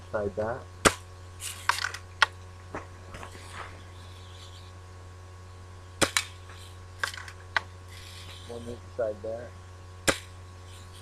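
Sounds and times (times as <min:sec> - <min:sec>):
bb gun shots: 0:00.8 - 0:02.3, 0:06.0 - 0:07.3, 0:10.0 - 0:10.4.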